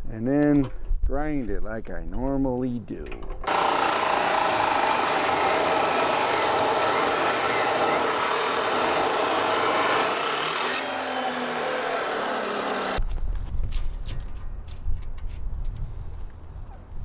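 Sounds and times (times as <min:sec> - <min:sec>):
chop saw cutting steel: 0:03.5 - 0:13.0
saw motor running: 0:03.5 - 0:13.0.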